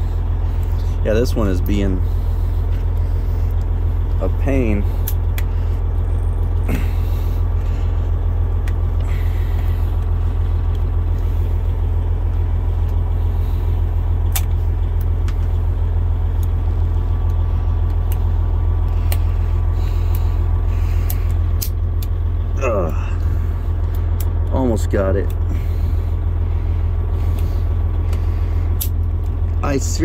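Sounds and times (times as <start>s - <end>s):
diesel engine idling: 0.0s - 30.0s.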